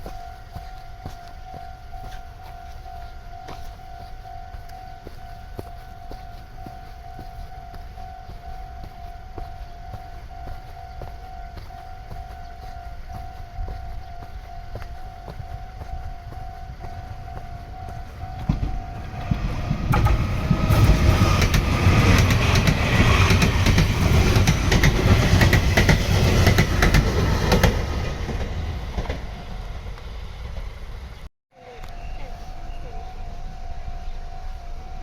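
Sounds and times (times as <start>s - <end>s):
level-crossing bell ringing: 0.0s - 23.0s, 31.9s - 35.0s
electric train passing: 0.0s - 35.0s
train wheels clacking on rail joints: 16.4s - 29.4s.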